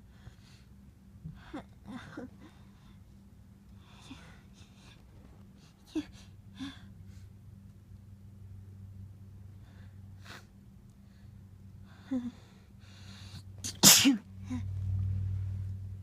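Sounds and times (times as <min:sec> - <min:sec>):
noisy breaths: 0:00.0 - 0:01.6, 0:09.4 - 0:13.6
steady low hum: 0:00.0 - 0:16.0
loud sneeze: 0:13.7 - 0:14.2.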